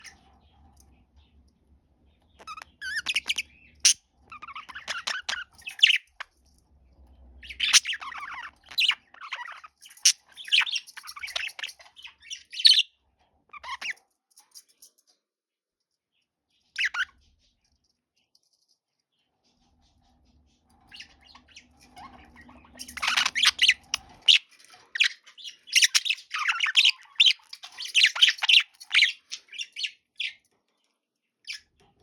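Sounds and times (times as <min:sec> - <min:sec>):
budgerigar chirping and chattering: 0:02.4 - 0:06.2, 0:07.4 - 0:12.9, 0:13.5 - 0:14.0, 0:16.8 - 0:17.1, 0:20.9 - 0:30.4.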